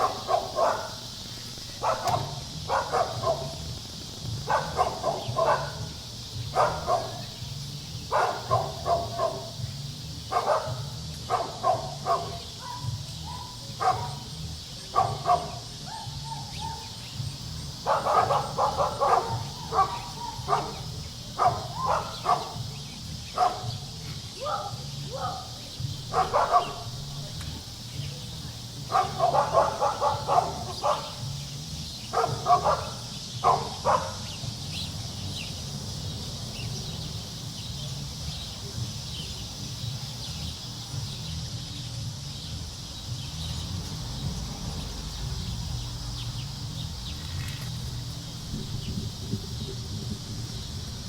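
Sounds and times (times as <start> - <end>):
dog barking: 0.0 - 1.1, 1.8 - 3.8, 4.4 - 7.4, 8.0 - 9.6, 10.3 - 17.0, 17.8 - 22.7, 23.3 - 27.2, 28.9 - 31.4, 32.1 - 34.4
steady high hiss: 0.0 - 51.0.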